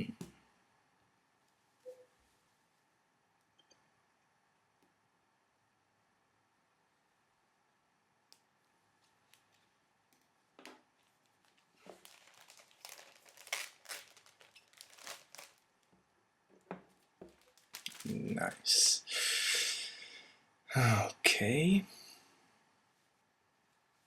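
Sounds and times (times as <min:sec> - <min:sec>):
packaging rustling and crinkling: 0:10.9 - 0:15.9, 0:16.9 - 0:18.8.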